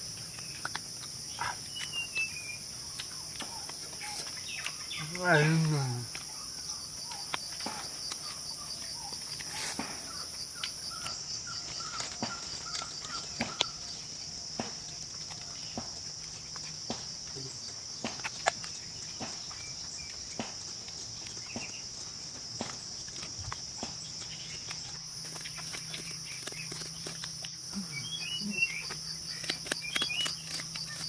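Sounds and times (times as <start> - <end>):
high-pitched insect chorus: 0.0 - 31.0
sharp clicks and snaps: 0.3 - 1.2, 28.8 - 31.0.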